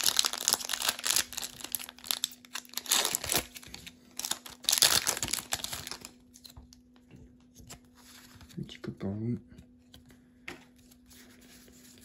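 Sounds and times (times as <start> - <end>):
foil wrapper crinkling and tearing: 0.0 - 6.6.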